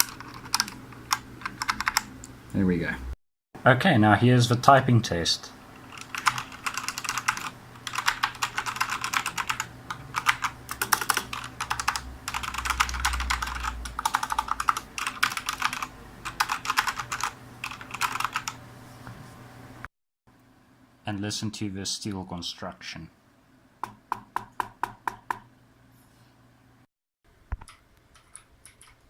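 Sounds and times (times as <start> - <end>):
mechanical keyboard typing: 0.0 - 2.1, 5.8 - 18.6, 27.6 - 29.0.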